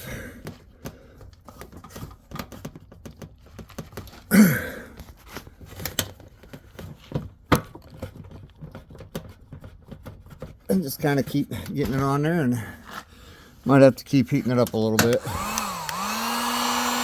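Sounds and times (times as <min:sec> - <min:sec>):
rubber hose rubbing and clicking: 0:00.4 - 0:04.3, 0:04.9 - 0:13.1
short falling grunt: 0:04.3 - 0:05.0
sharp click: 0:15.0 - 0:16.0.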